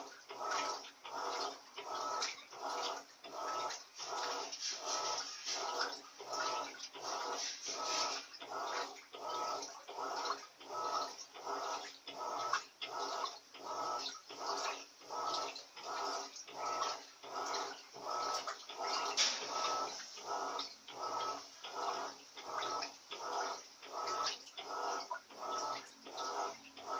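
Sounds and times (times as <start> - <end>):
washing machine sloshing: 0.0 - 26.9.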